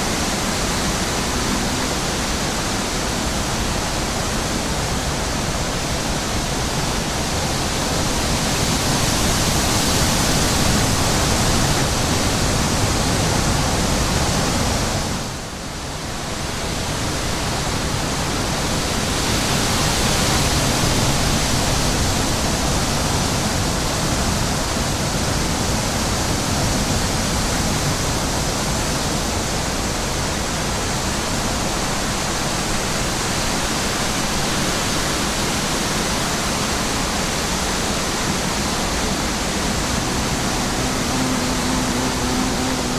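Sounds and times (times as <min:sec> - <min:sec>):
wind rushing over microphone: 0:34.5 - 0:42.9.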